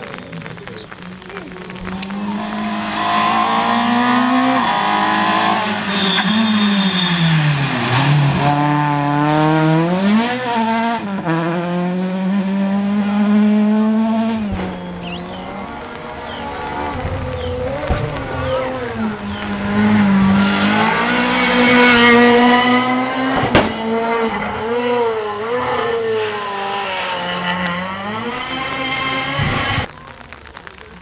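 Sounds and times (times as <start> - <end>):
rally car engine revving past: 1.7 - 29.9
sharp bang: 23.3 - 24.0.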